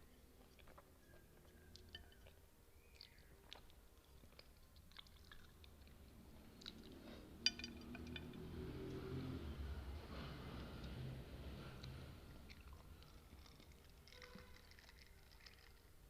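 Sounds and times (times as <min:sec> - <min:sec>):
close chewing of noodles: 0:00.0 - 0:07.0, 0:11.8 - 0:16.0
soft mouth clicks: 0:02.8 - 0:03.8.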